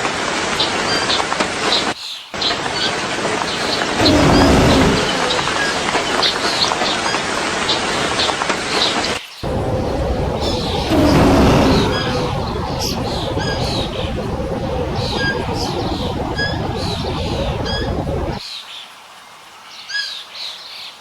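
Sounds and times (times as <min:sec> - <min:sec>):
dense low rumbling noise: 0:03.9 - 0:06.3, 0:09.4 - 0:18.4.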